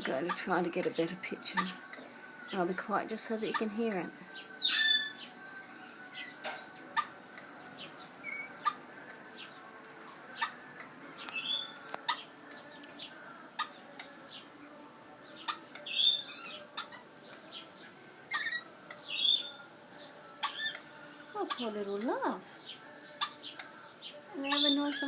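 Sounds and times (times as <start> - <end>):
bird squawking harshly: 4.6 - 5.3, 11.4 - 12.3, 15.4 - 17.0, 18.3 - 19.5, 20.4 - 20.8, 24.4 - 25.0.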